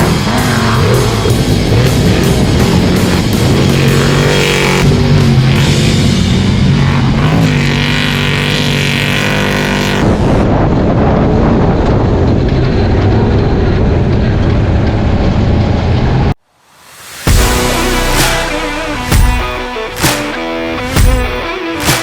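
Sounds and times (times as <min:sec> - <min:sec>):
music: 0:00.0 - 0:07.9, 0:16.6 - 0:22.0
race truck engine running: 0:00.0 - 0:16.3.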